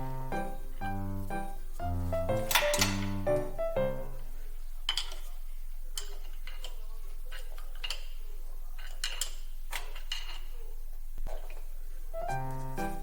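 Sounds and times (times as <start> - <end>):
metal parts clinking: 2.4 - 3.2.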